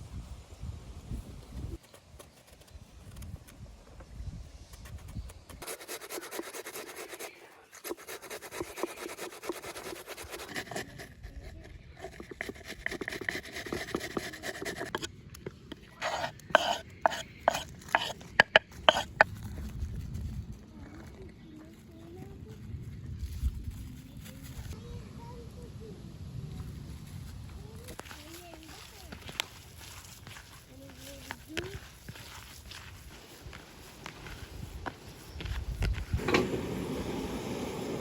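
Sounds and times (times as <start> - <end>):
fast scraping strokes: 4.7 - 15.1, 16.0 - 19.3.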